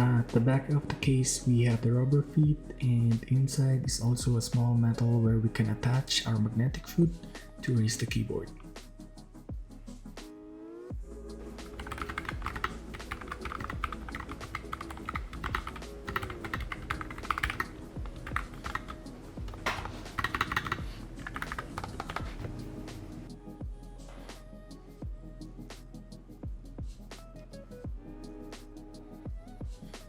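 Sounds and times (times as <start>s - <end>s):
background music: 0.0s - 30.0s
mechanical keyboard typing: 11.7s - 22.4s.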